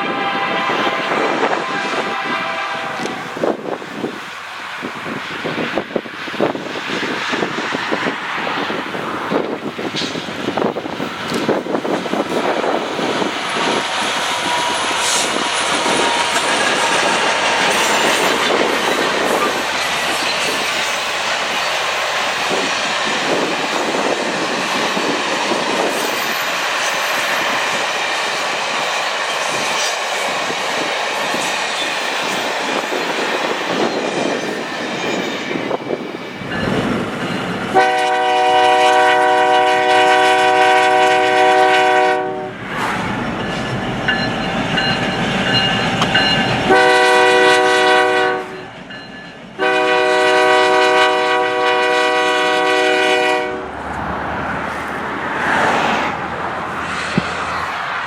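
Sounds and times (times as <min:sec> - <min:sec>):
locomotive horn blasts: 0:00.0 - 0:03.4, 0:37.7 - 0:42.6, 0:46.6 - 0:48.6, 0:49.6 - 0:53.7
train wheels clattering over rails: 0:09.3 - 0:38.0, 0:42.7 - 0:47.0.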